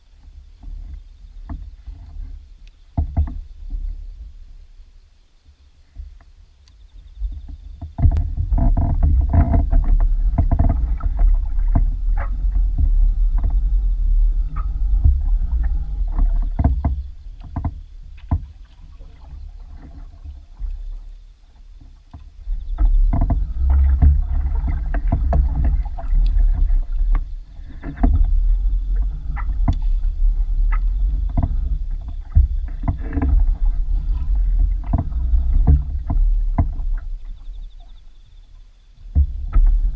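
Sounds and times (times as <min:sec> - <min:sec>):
hull and water rumble: 0:00.0 - 0:39.9
small knocks and clicks: 0:07.4 - 0:13.6, 0:14.5 - 0:18.7, 0:29.0 - 0:30.0.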